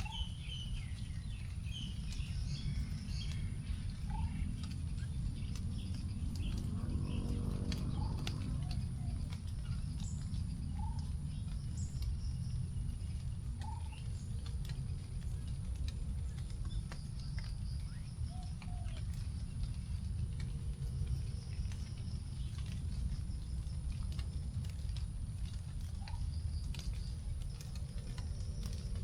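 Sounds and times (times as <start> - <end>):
bird chirps and calls: 0.0 - 14.4
raindrops dripping onto leaves: 0.0 - 29.0
steady low rumble: 0.0 - 29.0.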